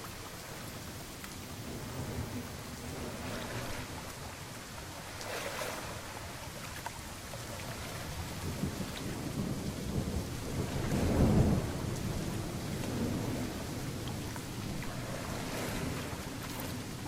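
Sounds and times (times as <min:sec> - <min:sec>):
steady rain: 0:00.0 - 0:17.0
thunder rumbling: 0:01.6 - 0:05.2, 0:07.4 - 0:17.0.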